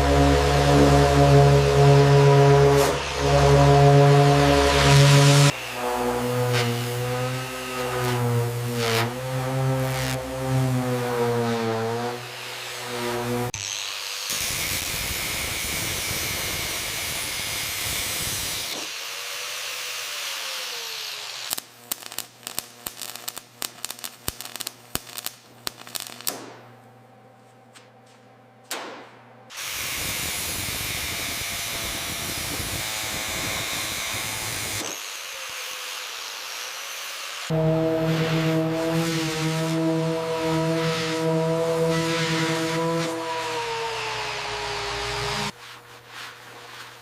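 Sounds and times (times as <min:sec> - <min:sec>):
power tool hiss: 0:11.9 - 0:26.4, 0:29.5 - 0:45.6
low hum: 0:37.5 - 0:45.5.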